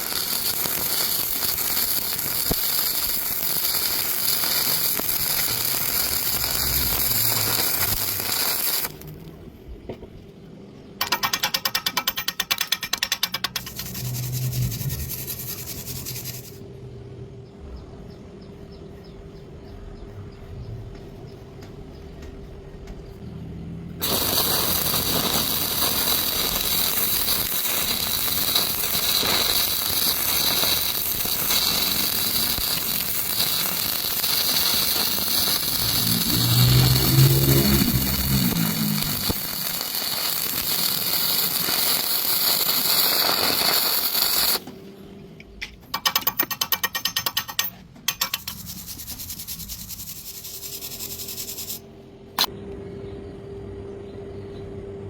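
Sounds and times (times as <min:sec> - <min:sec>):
welding arc crackling and hissing: 0:00.0 - 0:09.4, 0:11.0 - 0:16.6, 0:24.0 - 0:44.7, 0:48.2 - 0:51.8
rapid clicking: 0:11.0 - 0:16.5
low tone: 0:13.3 - 0:16.2, 0:35.7 - 0:39.4.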